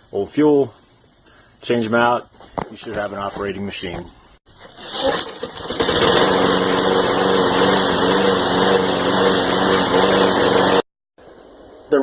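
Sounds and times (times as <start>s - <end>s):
push mower engine running: 4.6s - 10.9s.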